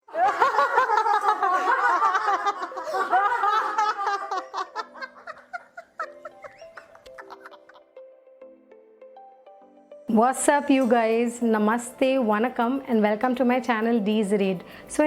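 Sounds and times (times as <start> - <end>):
people laughing: 0.1 - 7.9
music with held notes: 0.5 - 15.0.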